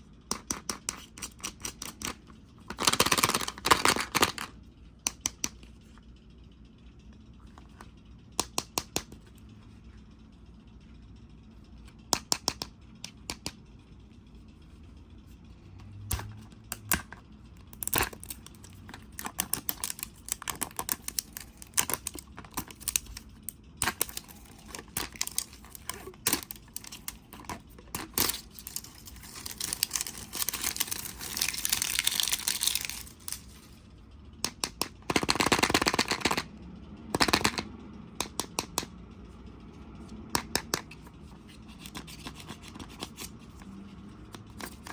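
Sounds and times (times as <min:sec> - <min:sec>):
plastic packaging crinkling: 0:23.8 - 0:33.7
packaging rustling: 0:23.9 - 0:33.7
sharp clicks and taps: 0:37.2 - 0:39.0.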